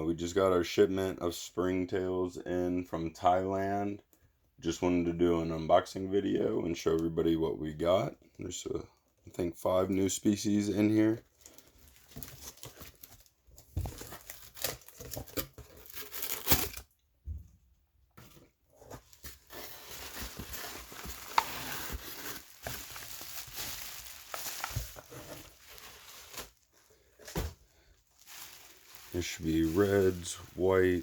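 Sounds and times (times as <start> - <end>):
packaging tearing and crinkling: 13.9 - 16.9, 19.1 - 27.4, 28.2 - 31.0.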